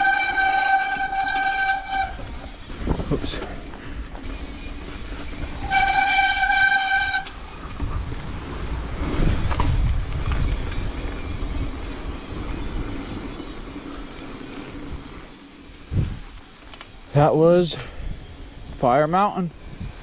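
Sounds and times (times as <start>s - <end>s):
disc brakes squealing: 0.0s - 3.2s, 4.2s - 8.3s
wind noise: 0.0s - 20.0s.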